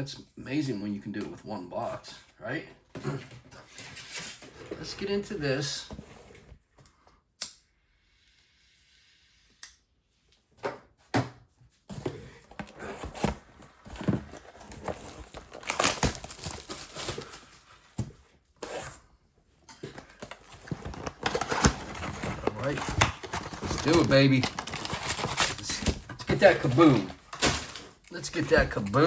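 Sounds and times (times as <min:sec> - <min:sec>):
plastic wrapping tearing and crinkling: 0:12.7 - 0:17.7, 0:20.2 - 0:29.0.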